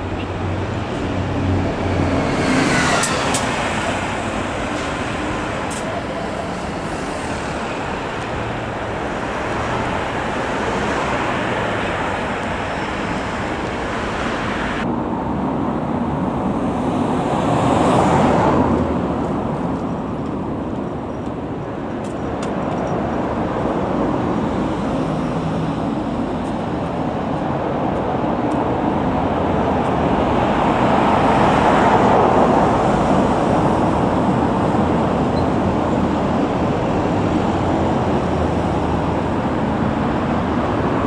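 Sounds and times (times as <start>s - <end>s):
vehicle passing close: 0.0s - 14.8s
road traffic: 0.0s - 41.0s.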